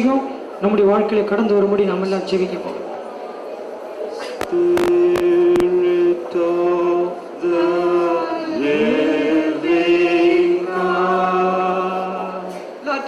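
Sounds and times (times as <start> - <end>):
voices singing a worship chant: 4.3 - 12.9.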